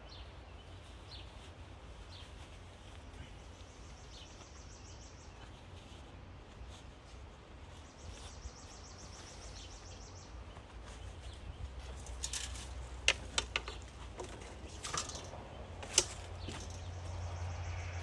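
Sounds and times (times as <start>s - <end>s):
sharp knocks and clicks: 12.0s - 16.9s.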